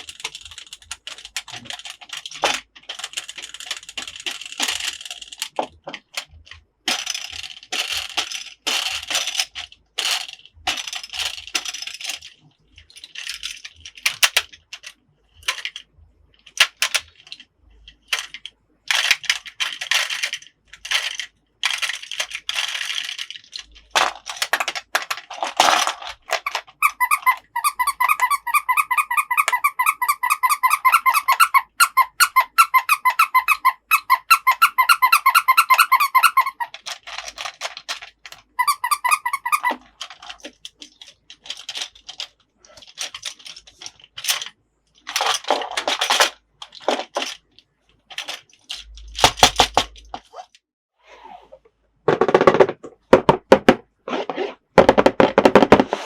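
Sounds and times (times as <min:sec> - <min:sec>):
plastic toy pieces clicking and rattling: 0:00.0 - 0:50.6.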